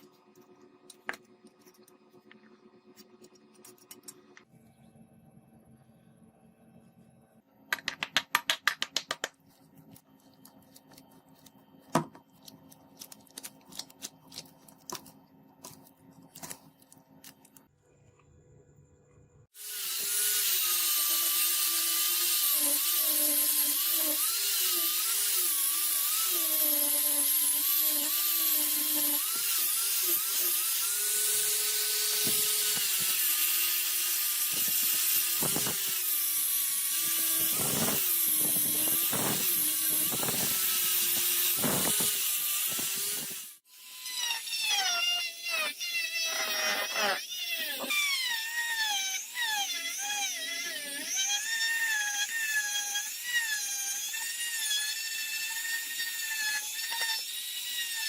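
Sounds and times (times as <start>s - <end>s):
electric power tool running: 19.6s - 44.2s.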